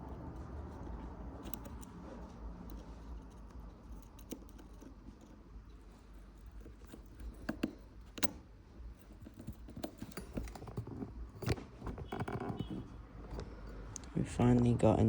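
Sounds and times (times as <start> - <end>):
small clicks and taps of tools: 0.7 - 2.0, 6.6 - 8.4.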